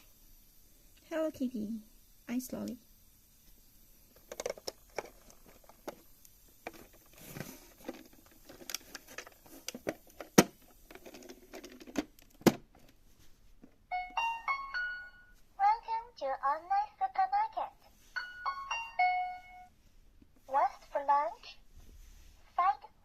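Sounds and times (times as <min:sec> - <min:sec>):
plastic toy pieces clicking: 0:04.2 - 0:06.0.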